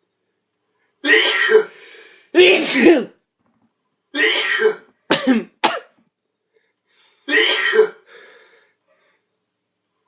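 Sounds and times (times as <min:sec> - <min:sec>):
person sneezing: 0:01.0 - 0:03.2, 0:04.2 - 0:05.9, 0:07.3 - 0:08.0.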